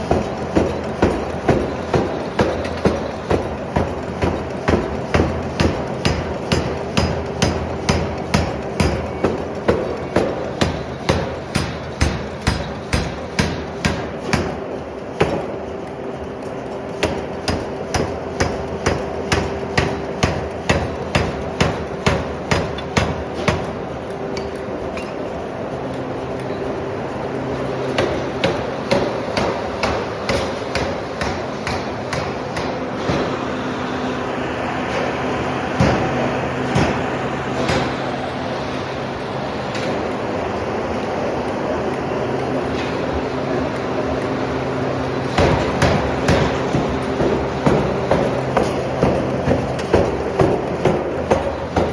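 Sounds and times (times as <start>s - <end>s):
steady low hum: 0.0s - 51.9s
hammer striking steel on anvil: 0.1s - 14.6s, 17.0s - 23.8s, 28.0s - 33.4s, 35.8s - 37.0s, 37.6s - 38.0s, 45.3s - 51.9s.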